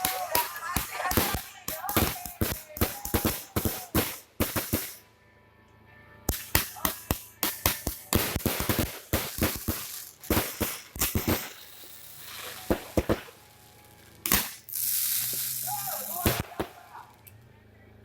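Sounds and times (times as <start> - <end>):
fireworks bangs: 0.0 - 5.0, 6.3 - 17.3
hissing crackle of fireworks: 0.0 - 5.1, 6.3 - 17.3.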